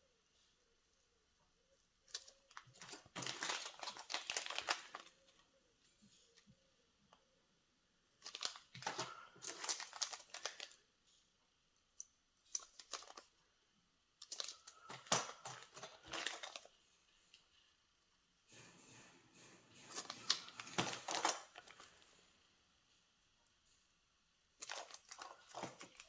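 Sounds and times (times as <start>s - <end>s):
plastic packaging crinkling and tearing: 2.5s - 5.4s, 8.2s - 10.7s.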